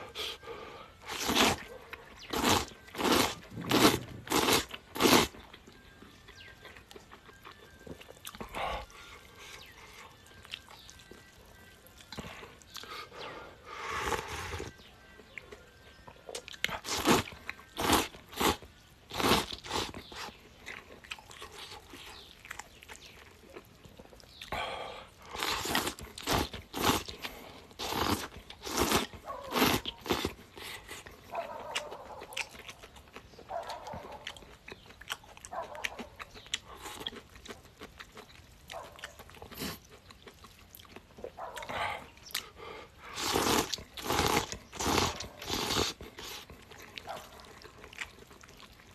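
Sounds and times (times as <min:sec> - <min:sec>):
person chewing: 0:01.0 - 0:48.9
person slurping noodles: 0:01.1 - 0:01.6, 0:27.8 - 0:30.3, 0:43.1 - 0:46.5.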